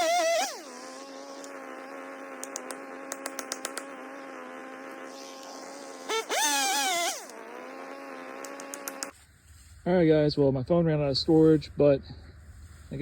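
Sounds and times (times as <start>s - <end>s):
chainsaw engine running and revving: 0.0s - 9.1s
sharp clicks: 2.4s - 4.0s, 8.4s - 9.2s.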